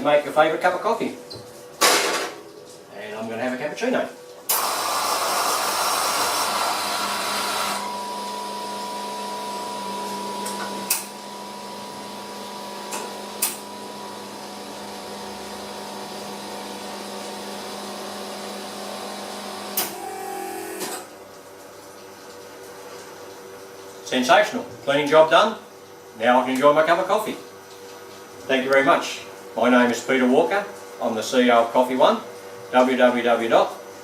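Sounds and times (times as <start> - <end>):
coffee machine hum: 4.3 - 33.0
coffee grinder whirring: 4.5 - 21.1.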